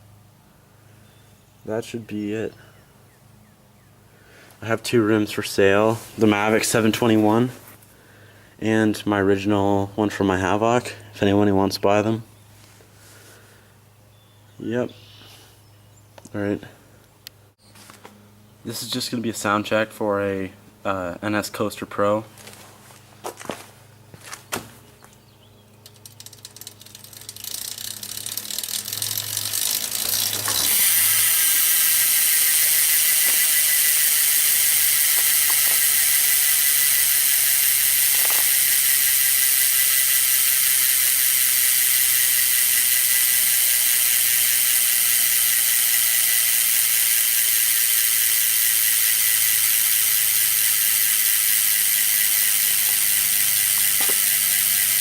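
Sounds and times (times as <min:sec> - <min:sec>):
bicycle hub ratcheting buzz: 0:25.8 - 0:55.0.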